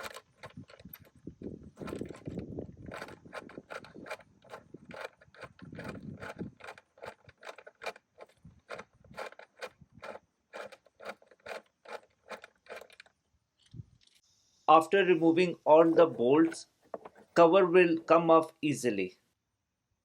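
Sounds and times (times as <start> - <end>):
bolts grinding: 0.0 - 14.2.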